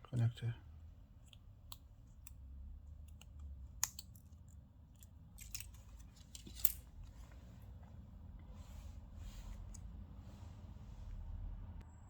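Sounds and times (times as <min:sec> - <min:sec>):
connector snapping: 0:03.1 - 0:04.2.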